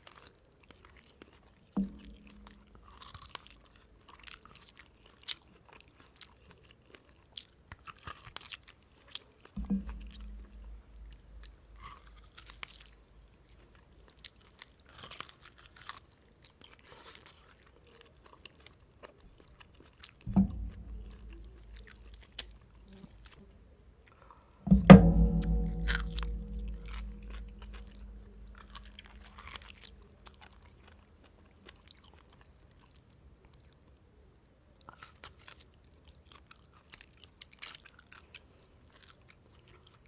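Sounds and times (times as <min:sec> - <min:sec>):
chewing and mouth smacks: 0:00.0 - 0:09.6, 0:10.3 - 0:23.4, 0:34.7 - 0:40.0
dull low thud: 0:01.8 - 0:02.9, 0:09.6 - 0:12.2, 0:20.3 - 0:22.8, 0:24.7 - 0:30.0
brief low hum: 0:09.6 - 0:11.8, 0:20.3 - 0:22.3, 0:24.7 - 0:29.9.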